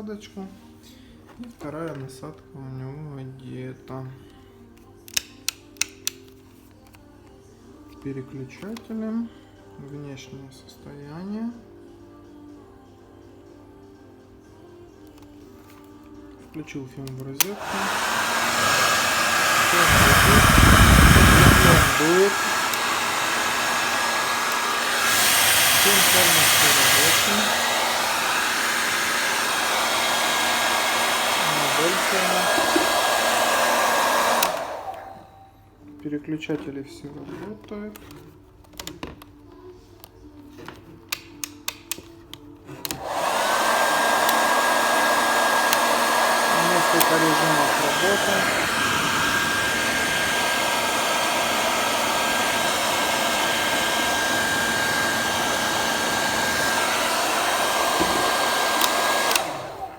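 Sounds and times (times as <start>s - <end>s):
hair dryer fan winding down: 17.4s - 35.4s, 42.8s - 59.9s
hair dryer blowing: 17.4s - 35.5s, 42.9s - 59.9s
high motor whine: 17.9s - 33.5s.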